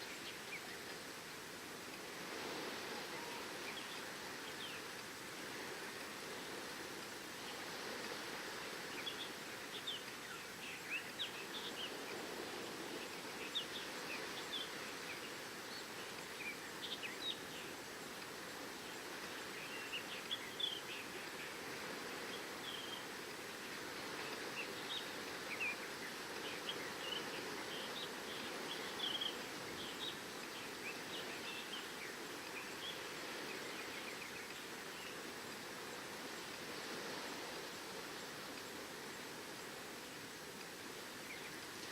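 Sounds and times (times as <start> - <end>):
sea waves on shore: 0.0 - 41.9
birds chirping: 18.5 - 36.1.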